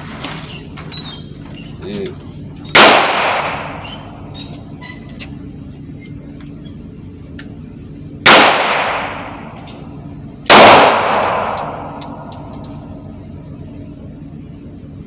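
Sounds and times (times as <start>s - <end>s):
pistol shots echoing: 2.8s - 3.8s, 8.3s - 9.6s, 10.5s - 12.6s.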